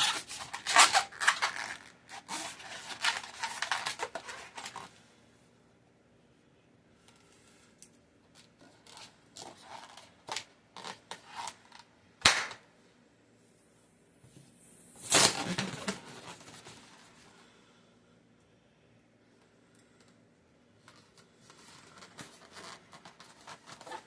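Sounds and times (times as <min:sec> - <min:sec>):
rubbery balloon squeaks: 0:00.0 - 0:04.8, 0:22.0 - 0:24.0
balloon popping: 0:12.2 - 0:12.6.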